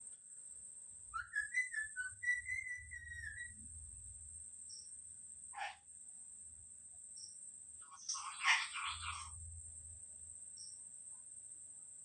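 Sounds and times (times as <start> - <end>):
faint high-pitched whine: 0.0 - 12.0
parrot whistling: 1.2 - 3.5.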